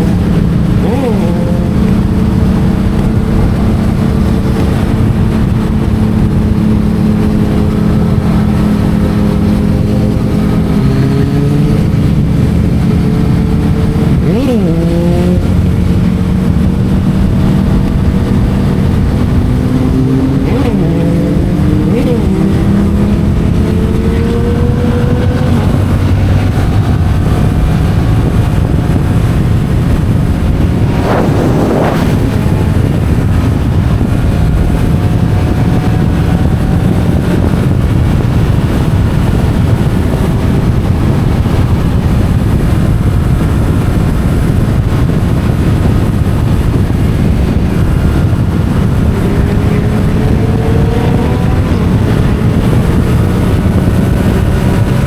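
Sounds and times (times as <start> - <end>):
motorcycle engine cruising: 0.0 - 55.0
wind noise on microphone: 0.0 - 55.0.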